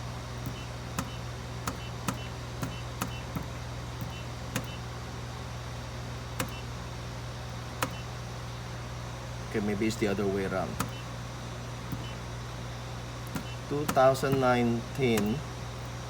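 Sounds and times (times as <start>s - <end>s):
printer humming: 0.0s - 16.0s
sharp clicks: 0.4s - 4.8s, 6.4s - 6.7s, 7.8s - 8.1s, 10.8s - 11.1s, 11.9s - 12.2s, 13.2s - 15.4s.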